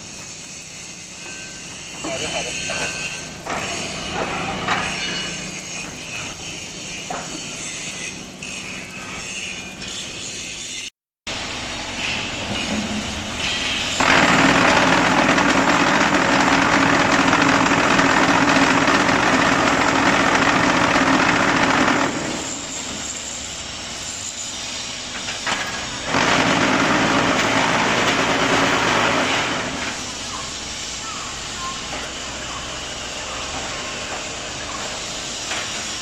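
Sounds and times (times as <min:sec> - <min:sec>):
block-making machine humming: 0:11.3 - 0:36.0.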